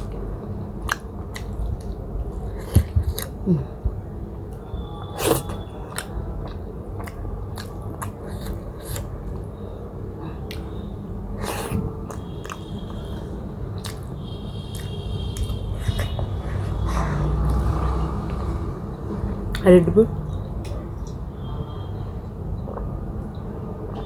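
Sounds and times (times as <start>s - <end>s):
person chewing with wet smacks: 0.0s - 3.4s, 4.5s - 9.6s, 10.2s - 18.4s, 22.6s - 24.0s.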